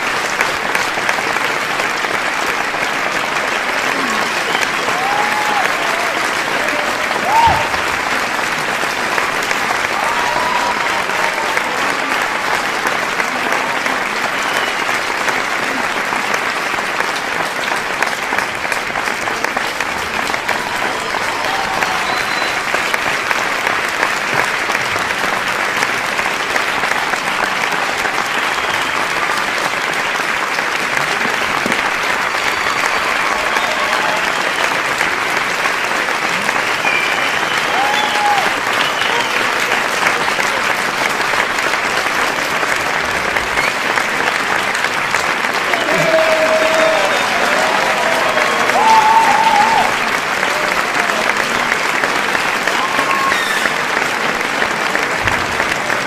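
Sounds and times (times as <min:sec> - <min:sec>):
audience applause: 0:00.0 - 0:56.0
crowd shouts and cheers: 0:03.0 - 0:08.5, 0:09.4 - 0:15.0, 0:20.1 - 0:23.3, 0:31.6 - 0:35.4, 0:36.2 - 0:39.8, 0:45.5 - 0:54.3.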